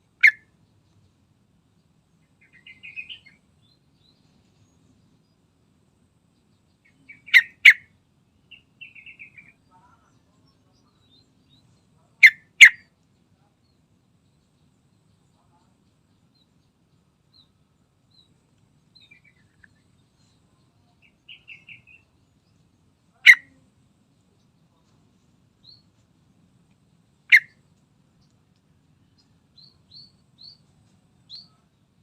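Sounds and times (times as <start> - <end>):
bird sharp calls: 0.0 - 0.5, 2.4 - 3.4, 6.8 - 7.9, 8.5 - 10.0, 12.2 - 12.9, 21.0 - 22.0, 23.2 - 23.6, 27.3 - 27.6.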